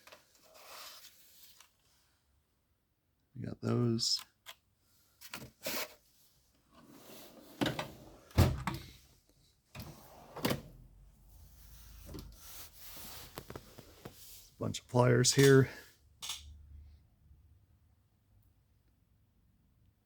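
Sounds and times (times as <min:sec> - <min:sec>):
metal drawers clunking and rattling: 0:07.2 - 0:08.9, 0:09.8 - 0:10.8.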